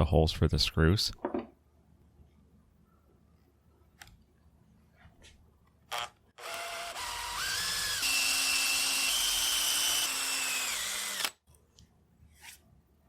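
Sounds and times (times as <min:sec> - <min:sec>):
electric drill whining: 0:05.9 - 0:11.4.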